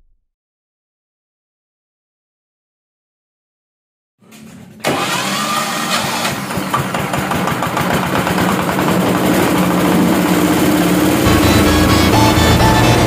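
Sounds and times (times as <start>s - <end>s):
diesel engine running: 4.2s - 13.0s.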